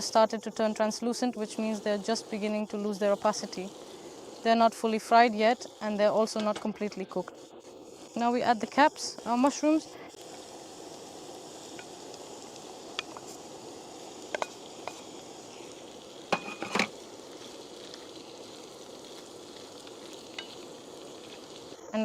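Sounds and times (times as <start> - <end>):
food sizzling in frying pan: 0.0 - 22.0.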